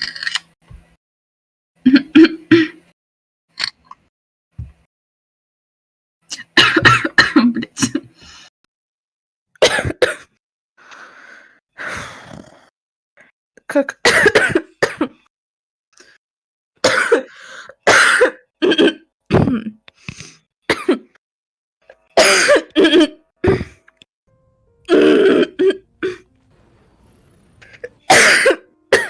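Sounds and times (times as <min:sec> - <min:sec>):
woman coughing: 0:06.4 - 0:08.1, 0:09.6 - 0:10.3, 0:13.7 - 0:15.2, 0:16.8 - 0:19.8, 0:20.7 - 0:21.1, 0:22.2 - 0:23.8, 0:27.8 - 0:29.0.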